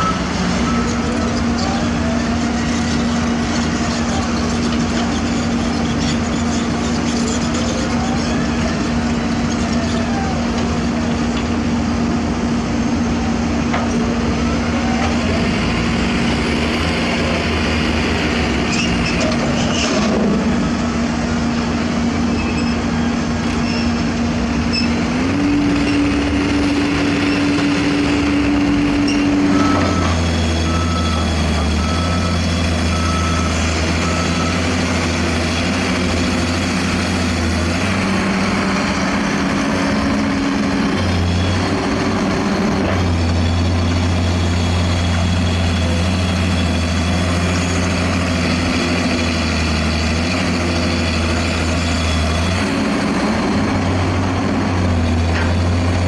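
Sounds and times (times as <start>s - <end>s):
diesel machinery engine running: 0.0s - 56.0s
reversing alarm beeps: 28.9s - 34.8s.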